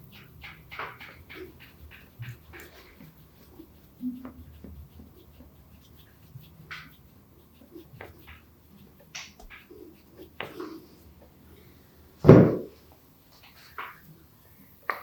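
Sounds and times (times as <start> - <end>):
massage strokes rubbing skin: 0.0 - 15.0.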